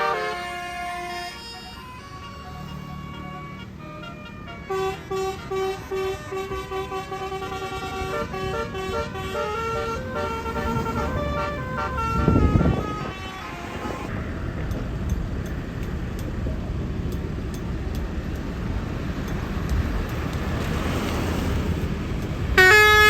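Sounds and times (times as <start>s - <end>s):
multi-tone air horn melody: 0.0s - 14.1s, 22.5s - 23.0s
bus engine low hum: 0.0s - 23.0s.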